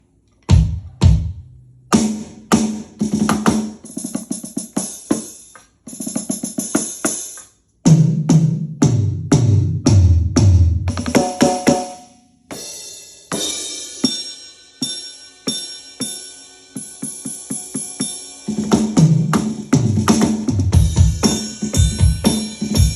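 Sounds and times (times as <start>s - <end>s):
cymbals: 11.2s - 22.9s
electronic drum hits: 16.8s - 22.9s.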